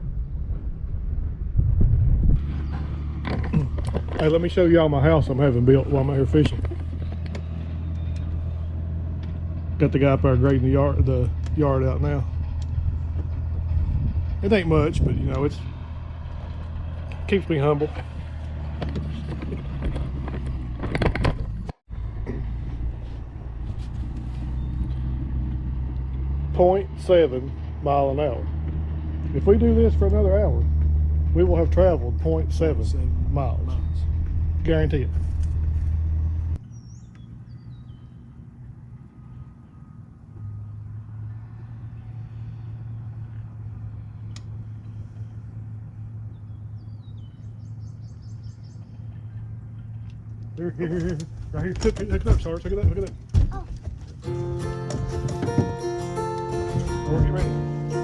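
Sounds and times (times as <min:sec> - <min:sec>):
low engine hum: 0:00.0 - 0:58.0
bird chirping: 0:06.8 - 0:08.8, 0:24.4 - 0:25.1, 0:36.6 - 0:38.4, 0:46.2 - 0:50.0.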